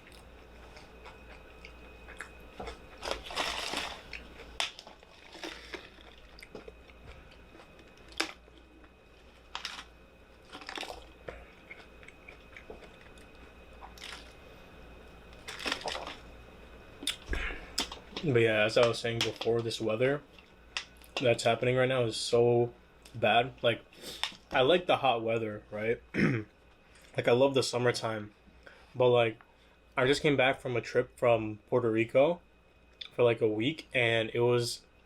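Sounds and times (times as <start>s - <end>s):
chewing food: 0.0s - 14.4s.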